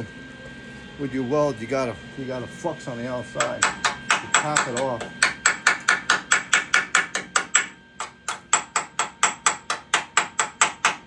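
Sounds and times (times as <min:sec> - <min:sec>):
hammer tapping metal: 0:03.4 - 0:11.0.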